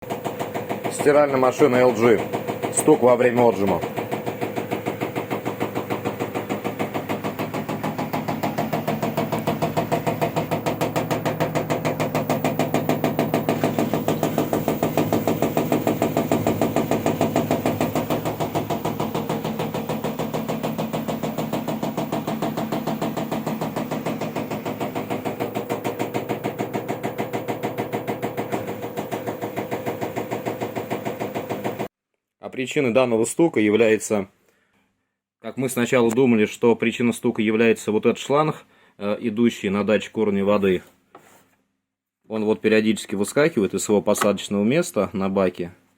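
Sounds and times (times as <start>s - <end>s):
washing machine spinning: 0.0s - 31.9s
hose knocking on cabinet: 3.6s - 31.9s.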